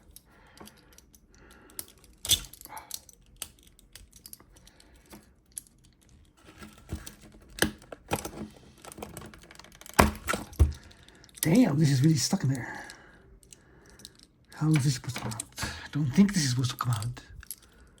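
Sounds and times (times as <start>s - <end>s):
small tool clicking and scraping plastic: 0.0s - 11.5s.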